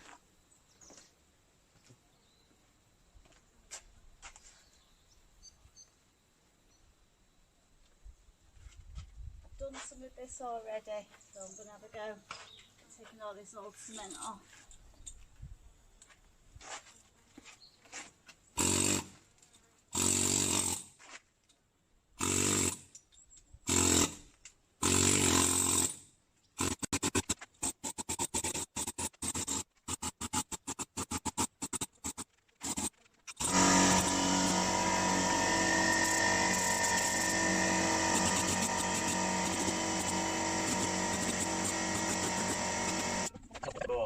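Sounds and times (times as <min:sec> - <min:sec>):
air chisel hammering: 0:26.6 - 0:43.3.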